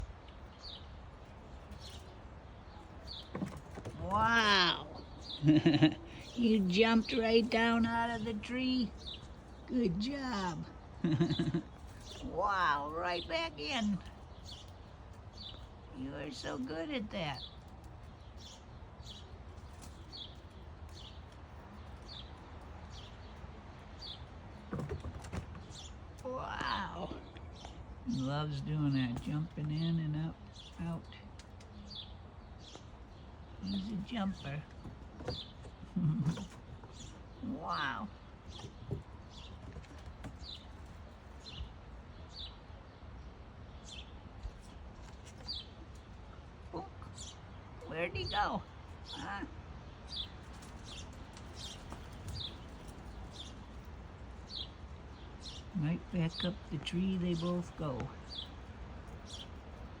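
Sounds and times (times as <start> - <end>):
bird chirping: 0.0 - 60.0
knocks and rustles: 3.0 - 4.4, 24.4 - 26.0, 34.6 - 37.2, 38.5 - 41.2.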